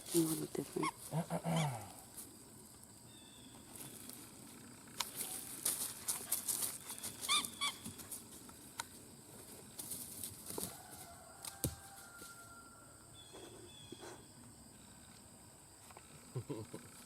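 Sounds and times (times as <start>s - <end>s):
high-pitched animal calls: 0.8s - 2.0s
footsteps rustling on twigs: 3.6s - 8.6s, 9.3s - 12.5s.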